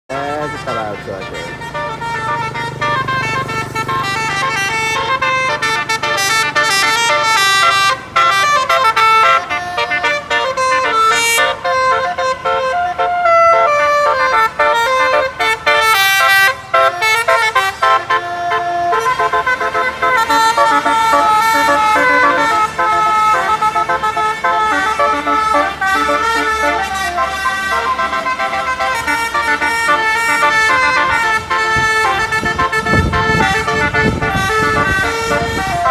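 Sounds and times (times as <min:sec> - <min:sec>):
low engine rumble: 0:00.1 - 0:35.9
multi-tone bus horn melody: 0:00.1 - 0:35.9.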